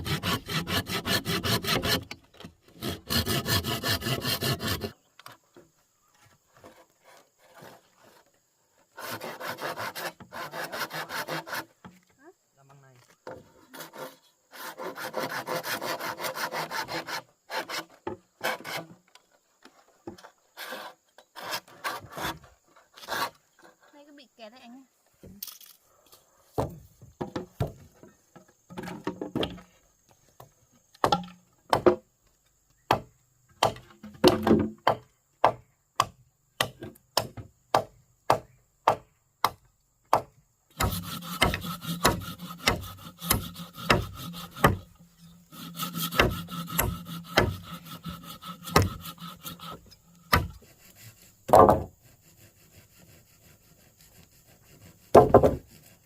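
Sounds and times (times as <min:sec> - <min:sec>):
sawing through wood: 0:00.0 - 0:05.0, 0:06.6 - 0:11.9, 0:13.3 - 0:19.0, 0:20.5 - 0:23.9, 0:40.7 - 0:56.0
sharp knocks on wood: 0:26.6 - 0:27.9, 0:32.9 - 0:44.9, 0:50.3 - 0:50.6, 0:51.5 - 0:51.9, 0:55.1 - 0:55.6.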